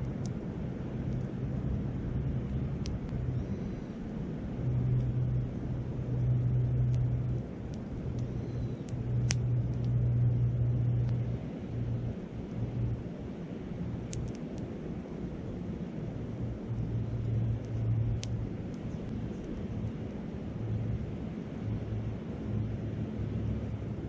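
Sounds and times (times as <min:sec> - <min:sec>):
wood fire crackling: 0:04.2 - 0:15.0, 0:16.2 - 0:19.8.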